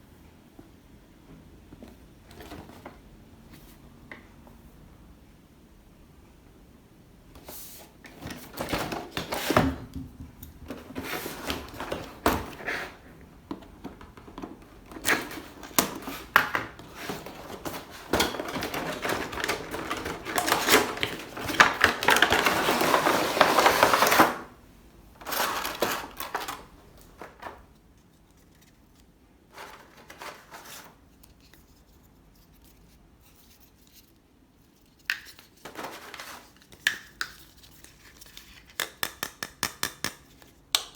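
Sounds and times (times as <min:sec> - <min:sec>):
packaging rustling: 0:10.6 - 0:24.5, 0:25.2 - 0:27.8, 0:29.5 - 0:31.0, 0:35.4 - 0:36.7
plastic toy clicks and knocks: 0:38.7 - 0:40.9.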